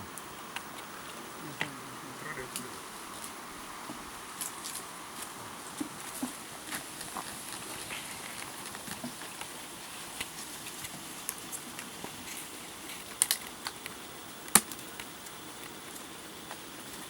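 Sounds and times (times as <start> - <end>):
faint steady hiss: 0.0 - 17.0
sharp clicks and pops: 11.2 - 16.6.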